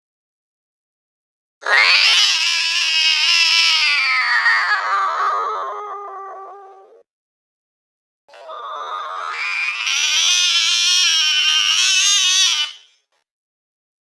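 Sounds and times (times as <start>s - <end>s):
slowed cat yowl: 1.6s - 7.1s.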